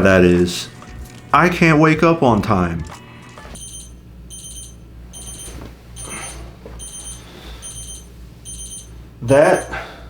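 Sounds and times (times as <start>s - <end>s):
rapid high-pitched alarm beeps: 3.5s - 9.8s.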